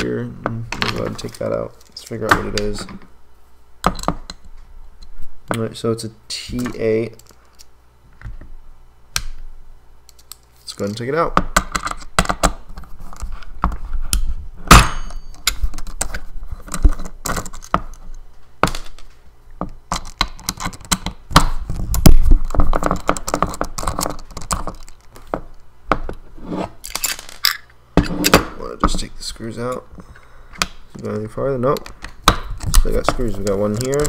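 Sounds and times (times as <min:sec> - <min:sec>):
metal parts being handled: 0:26.8 - 0:28.4.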